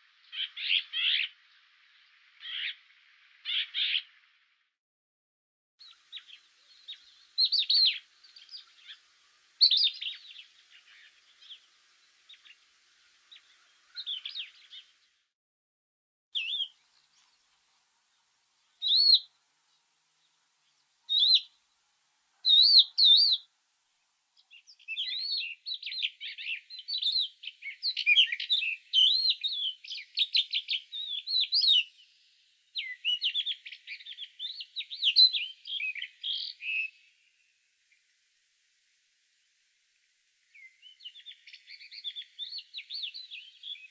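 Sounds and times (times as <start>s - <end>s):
birds singing: 0.2s - 4.2s, 5.8s - 15.2s, 16.4s - 21.6s, 22.4s - 23.5s, 24.4s - 37.2s, 40.5s - 43.9s
fast bird twittering: 0.3s - 1.3s, 2.4s - 2.8s, 6.1s - 9.0s, 9.6s - 11.7s, 16.4s - 17.3s, 18.8s - 19.3s, 21.1s - 21.5s, 22.4s - 23.4s, 24.6s - 31.9s.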